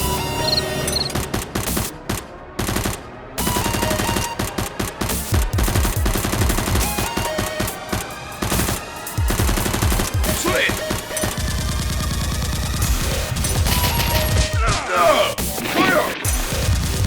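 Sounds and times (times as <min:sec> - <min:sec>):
background music: 0:00.0 - 0:17.0
machine gun fire bursts: 0:01.1 - 0:14.4.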